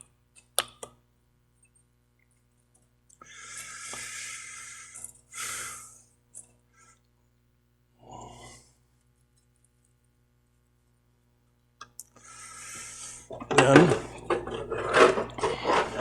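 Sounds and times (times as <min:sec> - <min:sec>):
lathe carriage whirring: 0:12.8 - 0:16.0.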